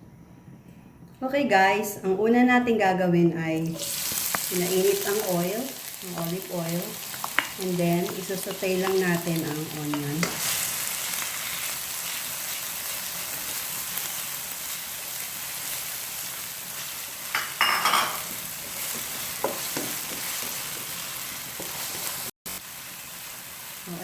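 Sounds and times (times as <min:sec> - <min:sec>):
onion sizzling in oil: 0:03.6 - 0:24.0.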